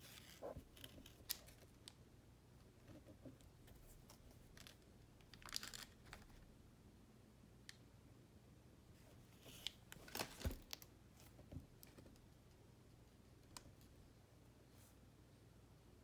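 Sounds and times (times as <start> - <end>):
low room hum: 0.0 - 16.0
soft handling clicks and rustles: 2.6 - 6.5, 9.0 - 15.0.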